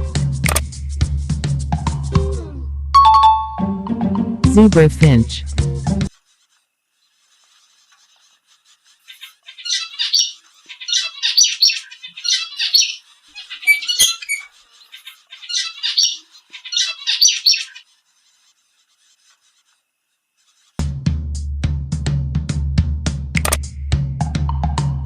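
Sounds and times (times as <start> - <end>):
sharp click: 0.4 - 0.7, 23.4 - 23.6
finches calling: 9.1 - 17.9.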